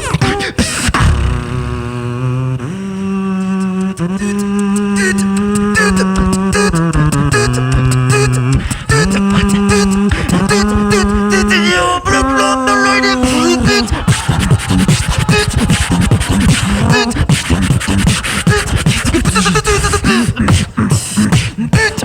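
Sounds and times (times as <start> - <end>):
beatbox vocal drum hits: 0.0 - 2.7, 3.4 - 22.0
sung bass notes: 1.0 - 2.6.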